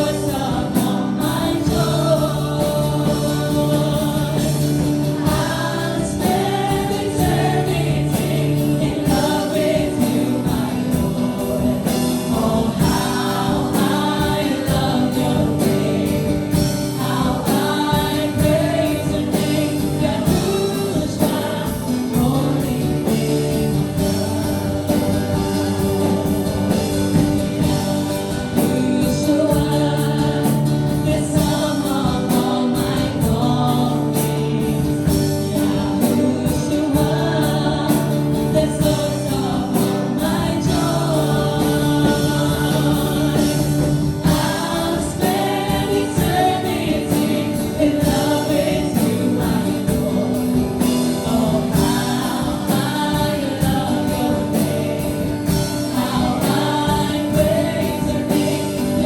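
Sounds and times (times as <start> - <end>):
group singing worship song: 0.0 - 59.0.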